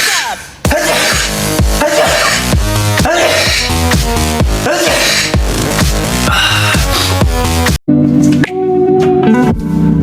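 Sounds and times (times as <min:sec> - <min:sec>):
electronic dance music: 0:00.0 - 0:07.8
song with held notes: 0:07.3 - 0:10.0.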